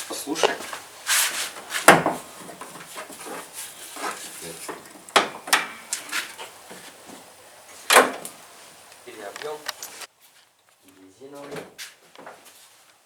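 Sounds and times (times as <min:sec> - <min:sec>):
knocks and clatter of handling: 0:01.8 - 0:07.3.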